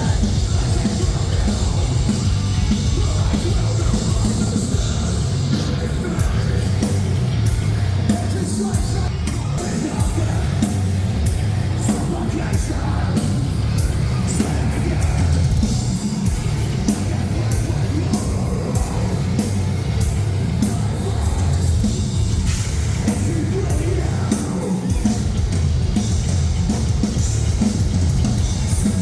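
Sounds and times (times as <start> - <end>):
drums and cymbal crashes: 0.0 - 29.0
heavy guitars and bass: 0.0 - 29.0
shouted vocals: 20.4 - 21.9.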